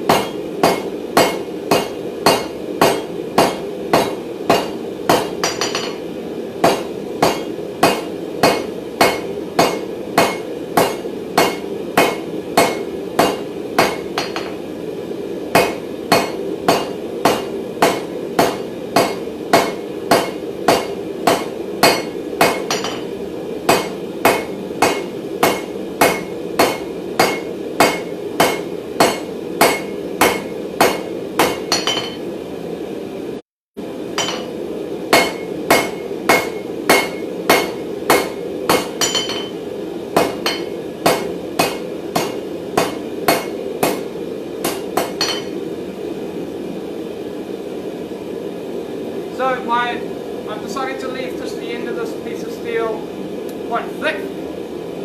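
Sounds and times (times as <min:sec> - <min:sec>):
hammer striking steel on anvil: 0:00.0 - 0:14.7, 0:15.5 - 0:32.3, 0:34.2 - 0:39.6, 0:40.2 - 0:45.6.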